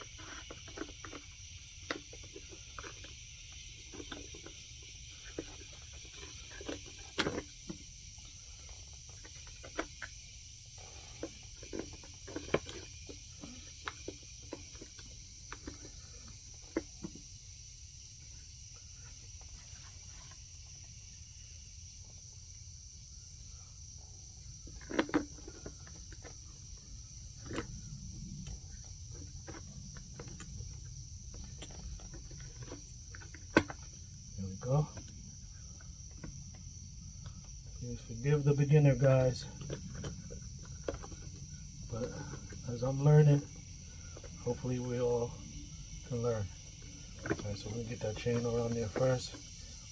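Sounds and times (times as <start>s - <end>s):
insects chirring: 0.0s - 49.9s
clicks and knocks of chainsaw parts: 5.2s - 7.9s.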